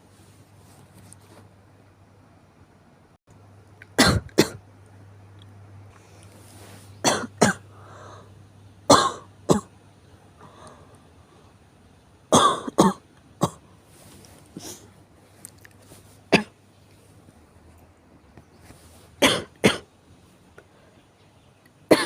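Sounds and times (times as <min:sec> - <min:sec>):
person coughing: 0:04.0 - 0:04.6, 0:07.0 - 0:07.7, 0:08.9 - 0:09.7, 0:12.4 - 0:13.6, 0:16.3 - 0:16.6, 0:19.2 - 0:19.9
faint breaths: 0:05.9 - 0:07.0, 0:07.6 - 0:08.5, 0:10.2 - 0:11.7, 0:20.3 - 0:21.4.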